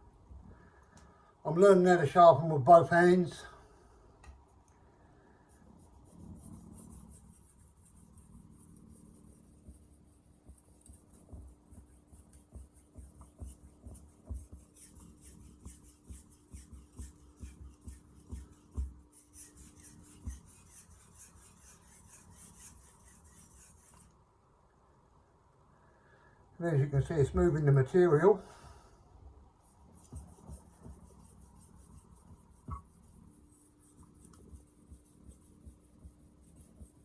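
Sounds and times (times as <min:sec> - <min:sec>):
light knocks of knife strokes: 0:09.6 - 0:24.2
knife scraping on whetstone: 0:14.5 - 0:24.1.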